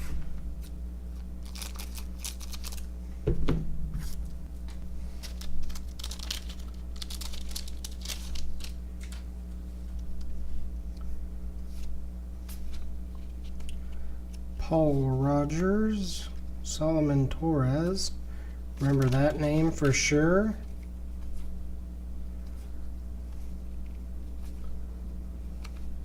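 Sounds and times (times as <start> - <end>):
low hum: 0.0 - 26.0
cards shuffling rustles: 0.6 - 2.9, 4.0 - 10.6, 11.6 - 14.4, 18.8 - 21.6, 25.4 - 26.0
wrappers crinkling and tearing: 1.1 - 2.9, 5.0 - 9.3, 18.8 - 20.9.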